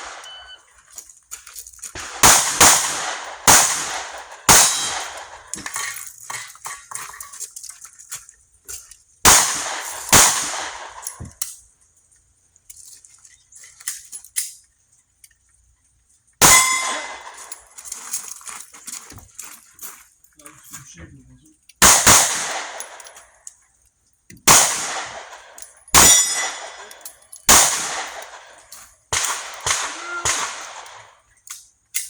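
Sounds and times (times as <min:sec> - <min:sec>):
pistol shots: 0:00.0 - 0:00.6, 0:02.0 - 0:05.6, 0:09.3 - 0:11.2, 0:16.4 - 0:17.5, 0:21.8 - 0:23.2, 0:24.4 - 0:31.2.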